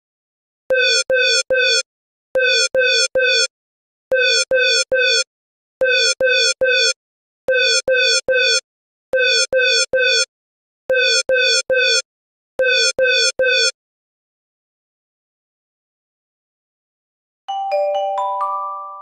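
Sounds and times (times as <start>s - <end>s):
buzzy electronic alarm beeps: 0.7s - 1.8s, 5.8s - 8.6s, 9.2s - 10.3s, 10.9s - 12.0s, 12.6s - 13.7s.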